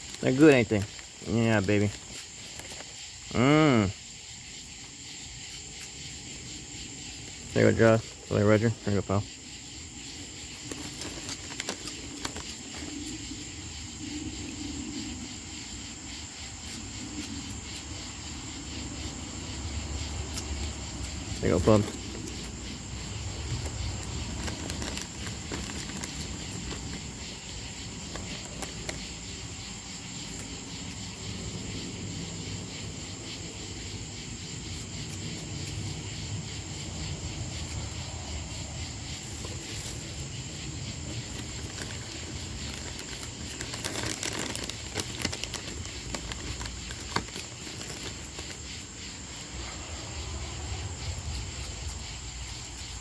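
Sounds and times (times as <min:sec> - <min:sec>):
high-pitched insect chorus: 0:00.0 - 0:53.0
rustling: 0:09.5 - 0:13.6, 0:20.2 - 0:30.6, 0:39.0 - 0:49.2.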